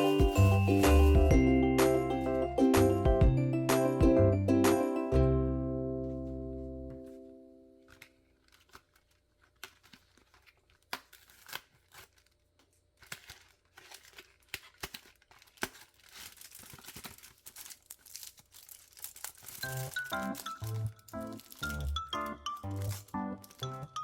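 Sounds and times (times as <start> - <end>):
packaging crinkling and tearing: 0.0 - 1.3, 7.8 - 24.0.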